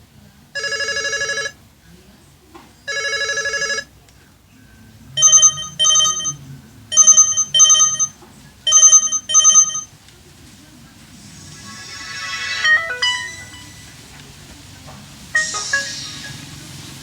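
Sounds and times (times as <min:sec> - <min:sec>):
fast trilling phone ring: 0:00.6 - 0:01.6, 0:02.9 - 0:03.9, 0:05.2 - 0:09.9
paired short phone beeps: 0:05.2 - 0:09.9.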